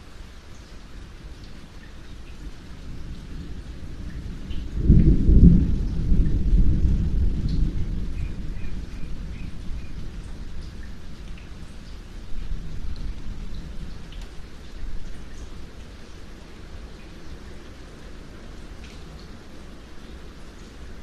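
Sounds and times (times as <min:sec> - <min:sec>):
steady rainfall: 0:00.0 - 0:21.0
thunder cracking and rumbling: 0:02.3 - 0:15.2.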